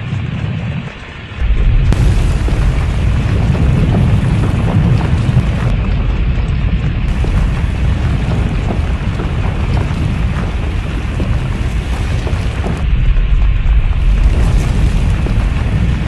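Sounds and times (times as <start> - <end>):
deep rumbling: 0.0 - 16.0
dense crashing noise: 0.1 - 16.0.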